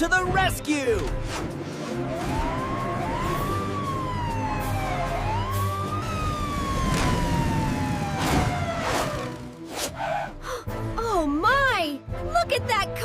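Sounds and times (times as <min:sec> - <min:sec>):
cartoon siren wailing: 0:02.1 - 0:09.2.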